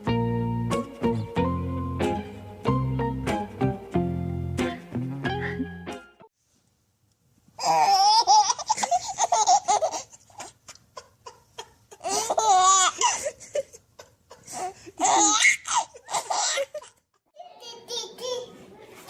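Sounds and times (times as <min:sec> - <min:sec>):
baby laughing: 0:07.6 - 0:18.7.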